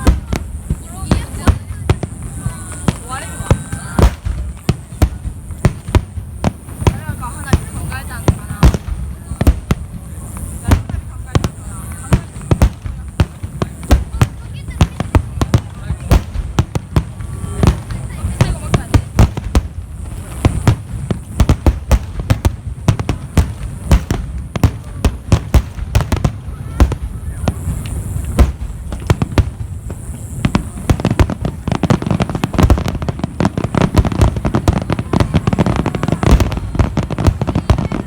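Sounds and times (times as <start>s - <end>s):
fireworks bangs: 0.0s - 38.0s
fireworks crackling: 0.0s - 38.0s.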